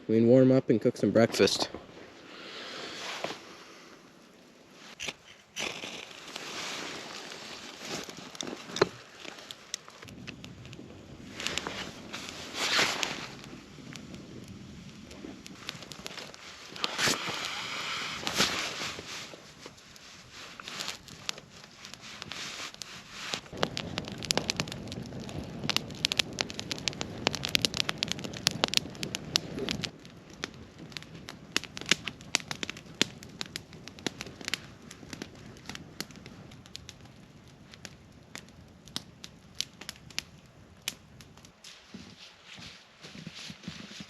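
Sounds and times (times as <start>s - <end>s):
campfire crackling and popping: 1.2s - 44.0s.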